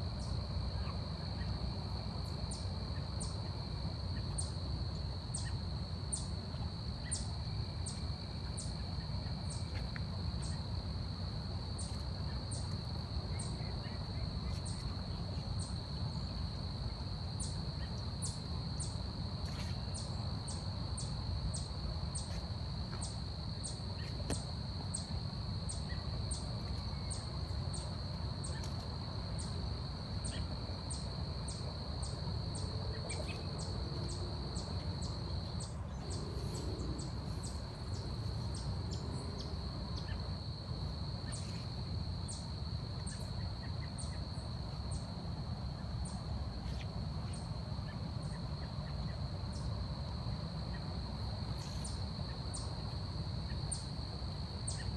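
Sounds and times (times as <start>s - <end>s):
insect high-pitched drone: 0.0s - 54.9s
insect sharp high chirps: 5.3s - 6.4s, 54.6s - 54.9s.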